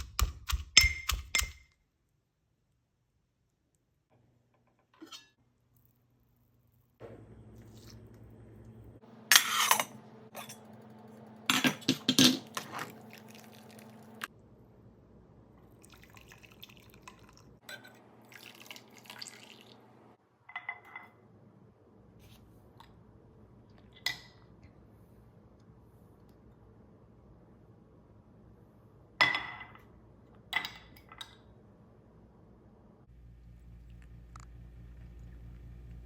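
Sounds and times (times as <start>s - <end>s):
low hum: 7.0s - 11.9s, 31.8s - 36.0s
kitchenware clinking: 9.3s - 10.8s, 11.5s - 14.0s, 20.5s - 21.2s, 29.2s - 29.9s
liquid pouring and dripping: 12.5s - 14.3s, 15.6s - 19.9s.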